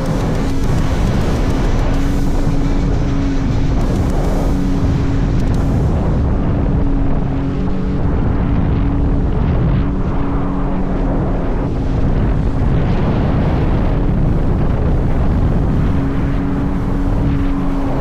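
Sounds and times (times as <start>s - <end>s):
water rushing: 0.0s - 9.6s
jet ski engine: 0.0s - 18.0s
wind buffeting microphone: 0.0s - 18.0s.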